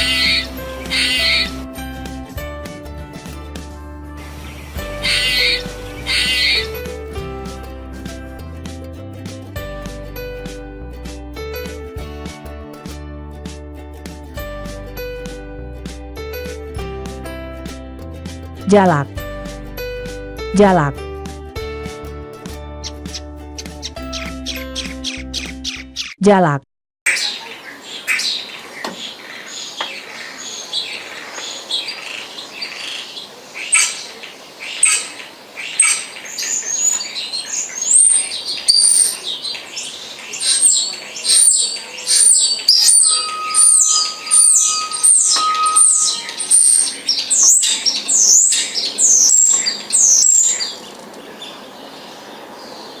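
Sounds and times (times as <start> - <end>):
starling whistles and chirps: 27.1 - 50.8.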